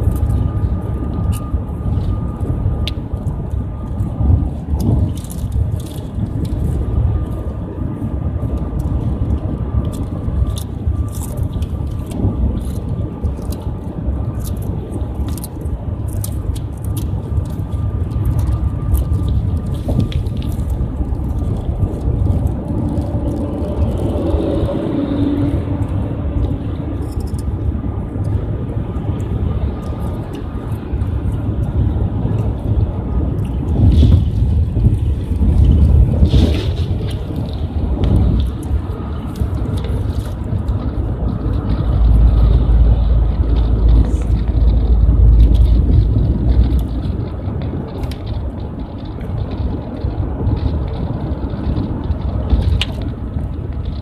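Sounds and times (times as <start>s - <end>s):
faint steady whine: 0.0s - 51.1s
car cabin road rumble: 0.0s - 54.0s.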